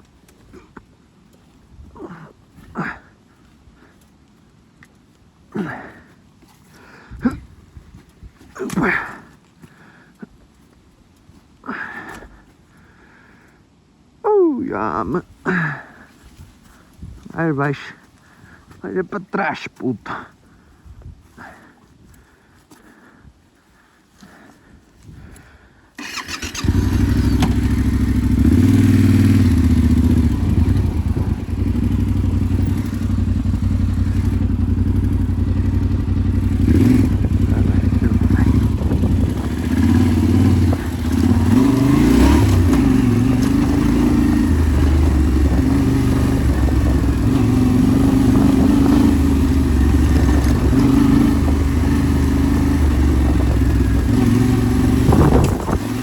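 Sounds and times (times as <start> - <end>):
motorcycle engine revving: 26.0 - 56.0.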